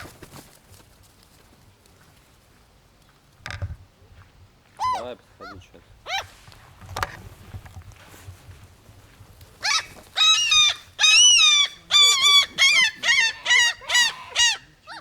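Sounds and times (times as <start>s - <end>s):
seagull screeching: 4.8s - 6.3s, 9.6s - 15.0s.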